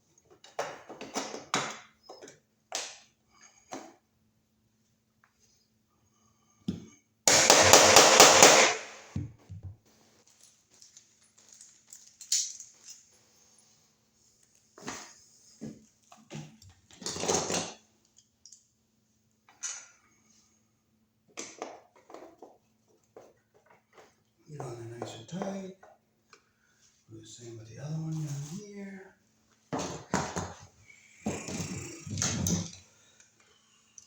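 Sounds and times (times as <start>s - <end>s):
rattling burst of rapid strikes: 7.3s - 9.1s
metal parts and tools clicking: 10.4s - 13.1s.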